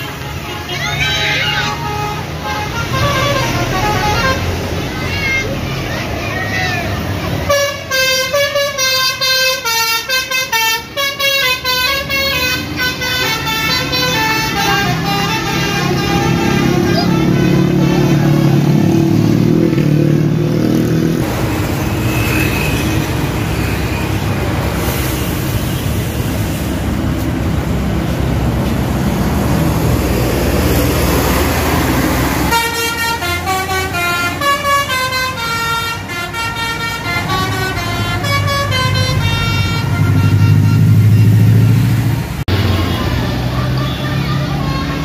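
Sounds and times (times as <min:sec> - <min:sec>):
musical bus horn tune: 0:00.0 - 0:05.4, 0:07.4 - 0:18.8, 0:31.2 - 0:41.9, 0:42.5 - 0:45.0
bus engine and road noise: 0:00.0 - 0:45.0.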